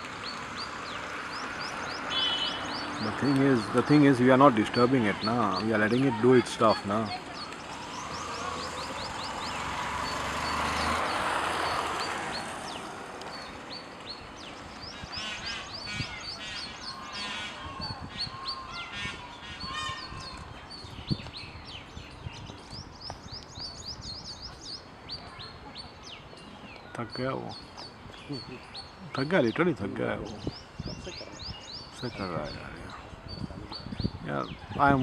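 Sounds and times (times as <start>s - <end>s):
bird rapid repeated calls: 0.0s - 21.6s
birds chirping: 0.0s - 35.0s.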